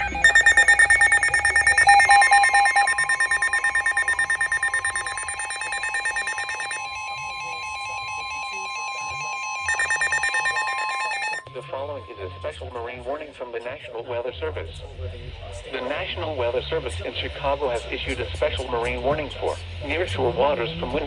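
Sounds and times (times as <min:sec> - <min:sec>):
rapid pulsing alarm beeps: 0:00.0 - 0:11.5
steady warning alarm tone: 0:00.0 - 0:11.5.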